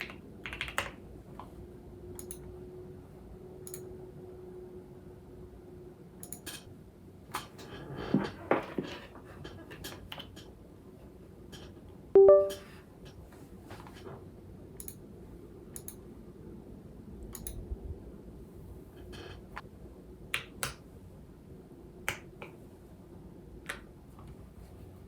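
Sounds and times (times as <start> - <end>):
electronic chime: 12.2 - 12.6.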